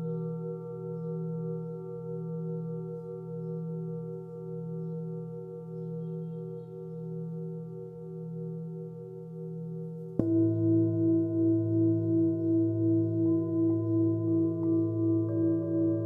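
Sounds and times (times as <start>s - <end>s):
singing bowl ringing: 10.2s - 16.0s.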